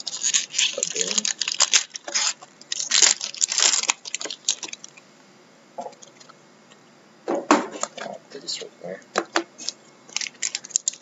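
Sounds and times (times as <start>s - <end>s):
trading cards crinkling and rustling: 0.0s - 5.0s, 9.2s - 11.0s.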